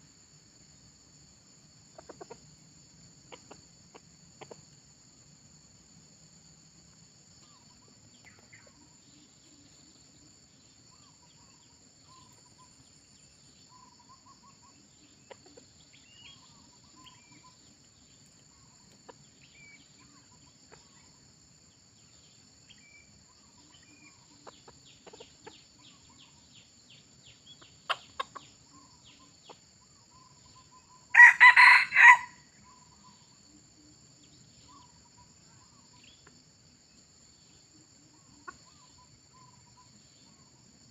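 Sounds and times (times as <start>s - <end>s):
high insect buzz: 20.1s - 33.5s
short sharp bird calls: 30.1s - 33.2s
rooster crowing: 31.1s - 32.5s.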